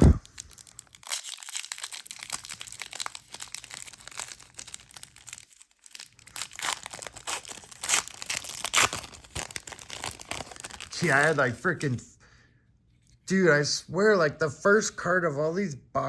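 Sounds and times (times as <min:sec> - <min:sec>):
plastic packaging crinkling: 0:00.0 - 0:11.4.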